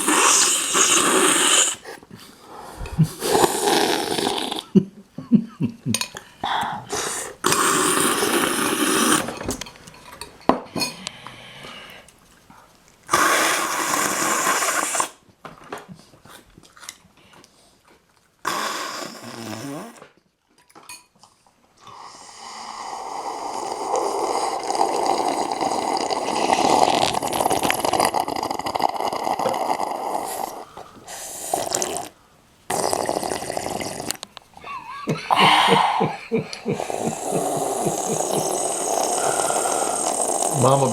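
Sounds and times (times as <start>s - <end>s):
soup being slurped: 0.0s - 2.0s, 7.2s - 9.4s, 22.0s - 34.3s, 36.6s - 40.9s.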